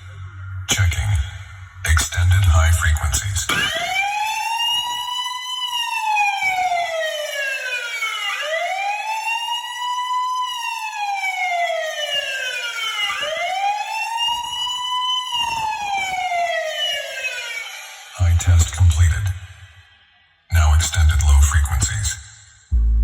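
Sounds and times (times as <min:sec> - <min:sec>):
siren-like wailing test tone: 0:03.5 - 0:18.2.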